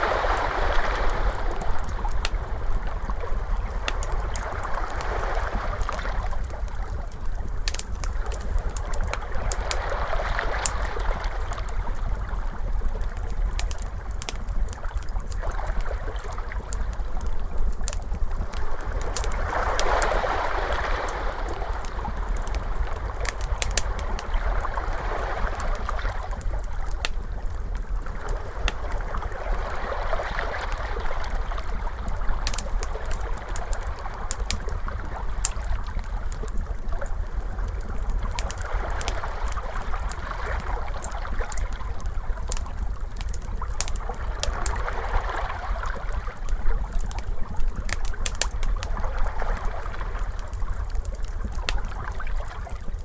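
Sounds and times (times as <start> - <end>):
ocean waves: 0.0 - 6.4, 18.7 - 26.4, 44.4 - 46.3
fire crackling and popping: 0.0 - 53.0.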